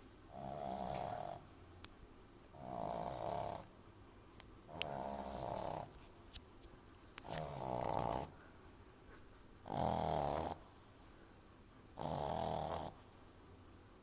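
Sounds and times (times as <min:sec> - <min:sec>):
puppy snoring loudly: 0:00.3 - 0:01.5, 0:02.5 - 0:03.7, 0:04.7 - 0:05.9, 0:07.2 - 0:08.3, 0:09.6 - 0:10.8, 0:12.0 - 0:13.2.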